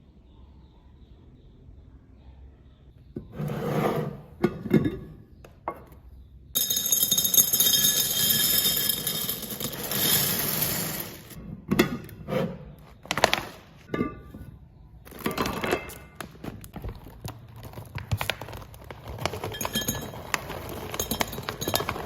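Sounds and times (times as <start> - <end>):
sharp knocks of jars: 6.6 - 12.2
snack packaging rustling: 16.2 - 22.0.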